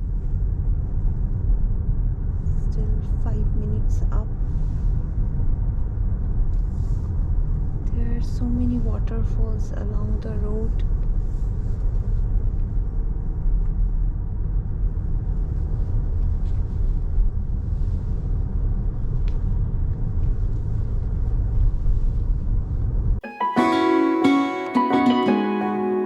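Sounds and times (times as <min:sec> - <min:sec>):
car road and engine rumble: 0:00.0 - 0:23.2
plucked-string music: 0:23.2 - 0:26.0.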